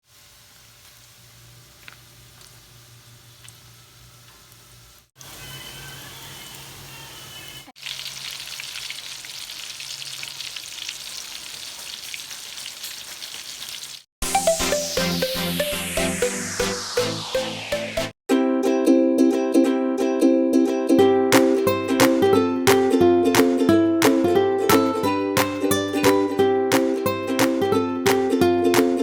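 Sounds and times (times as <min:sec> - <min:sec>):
food deep-frying in oil: 0:00.0 - 0:14.1.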